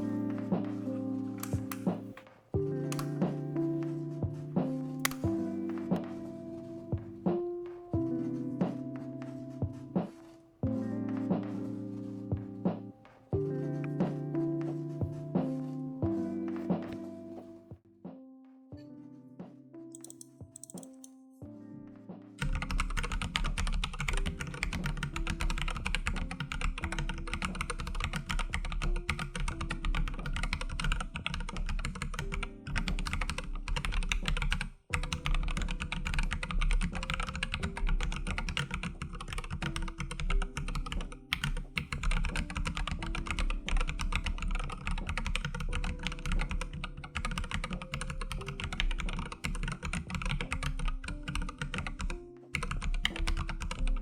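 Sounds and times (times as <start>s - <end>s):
mechanical keyboard typing: 0.0s - 2.2s, 2.8s - 3.3s, 5.0s - 6.1s, 19.9s - 21.1s, 22.4s - 54.0s
soft background music: 0.0s - 54.0s.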